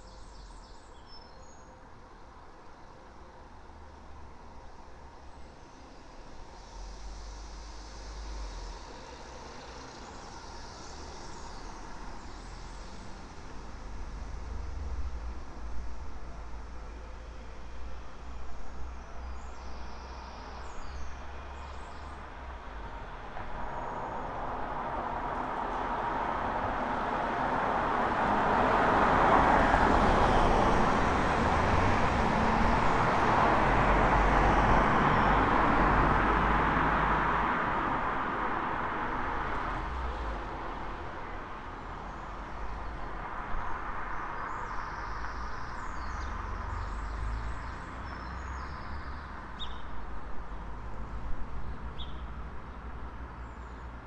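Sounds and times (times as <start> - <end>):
road traffic passing: 1.8 - 54.0.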